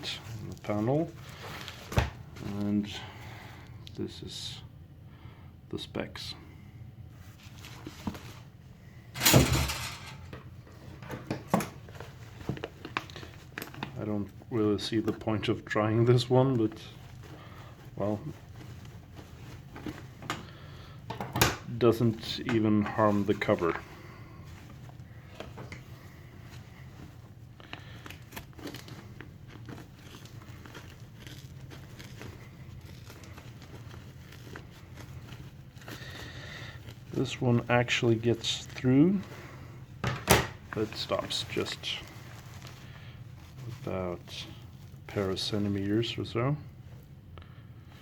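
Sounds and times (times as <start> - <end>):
material crinkling: 0.0 - 2.7, 7.1 - 47.2.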